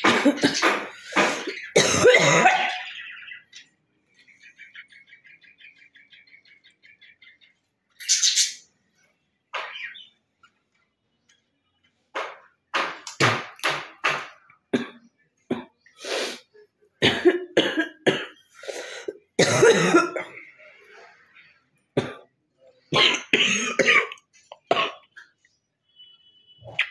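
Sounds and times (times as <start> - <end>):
bird chirping rapidly: 0.3 - 10.4
woman coughing: 1.2 - 2.8, 17.0 - 18.3, 19.4 - 20.4, 23.0 - 25.0.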